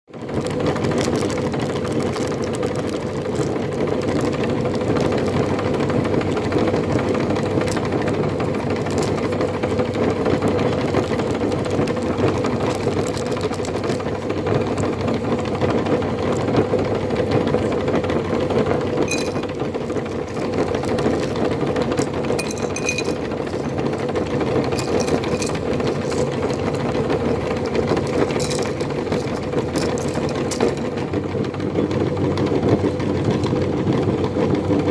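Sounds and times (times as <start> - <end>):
sharp clicks and crackles: 0.2 - 17.8, 18.4 - 31.6
electric meat grinder running: 0.2 - 22.3.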